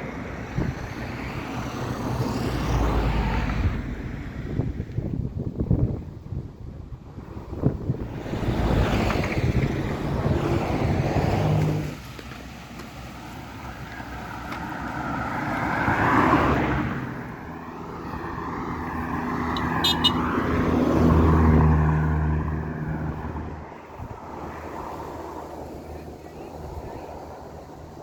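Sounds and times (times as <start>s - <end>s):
vehicles passing on road: 0.0s - 28.0s.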